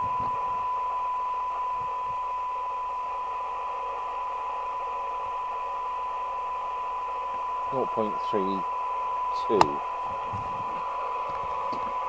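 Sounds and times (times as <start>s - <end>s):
radio hiss: 7.3s - 12.0s
steady test tone: 7.7s - 11.5s.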